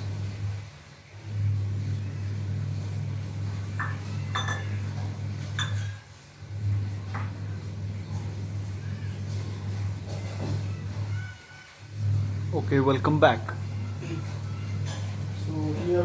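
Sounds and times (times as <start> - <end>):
hard objects clinking together: 3.8 - 4.8.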